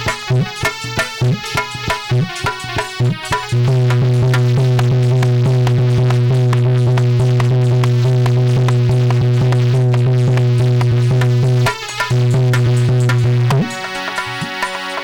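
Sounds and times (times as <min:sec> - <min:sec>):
fast drum beat: 0:00.0 - 0:15.0
held keyboard note: 0:00.0 - 0:15.0.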